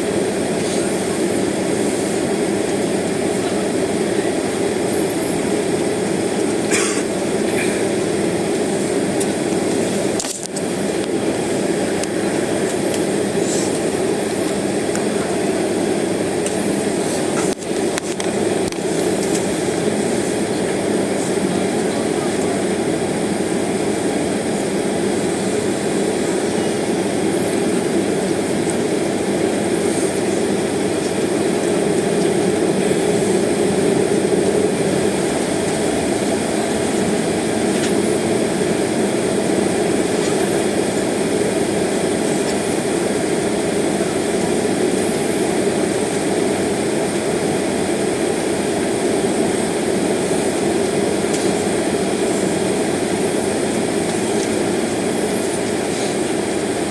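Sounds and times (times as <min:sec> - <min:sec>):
jet engines at low power: 0:00.0 - 0:56.9
cabin ventilation hiss: 0:07.0 - 0:21.5, 0:44.2 - 0:56.9.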